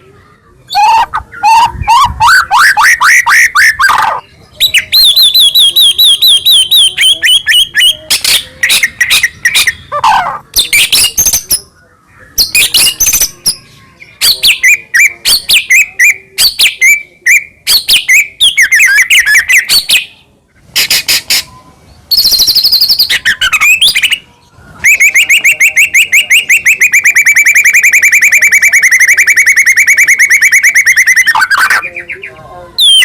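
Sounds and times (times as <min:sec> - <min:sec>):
bird singing whistled phrases: 0:00.7 - 0:11.6, 0:12.2 - 0:20.2, 0:21.3 - 0:33.0
bird fast trill: 0:00.7 - 0:11.8, 0:20.7 - 0:32.2.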